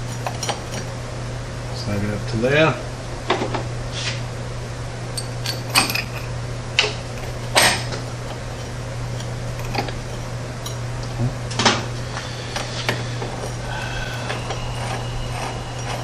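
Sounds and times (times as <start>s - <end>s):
steady low hum: 0.0s - 16.0s
steel tool pieces clinking: 5.2s - 6.3s.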